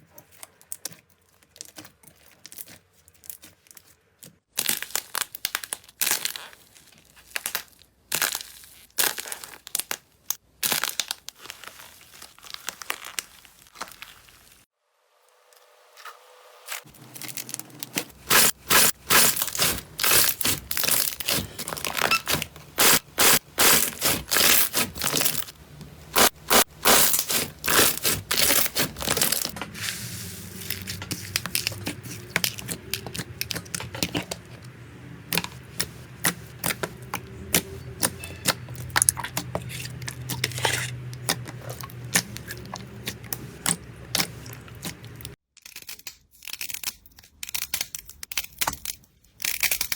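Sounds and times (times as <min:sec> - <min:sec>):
slime crackling and popping: 0:04.6 - 0:14.6.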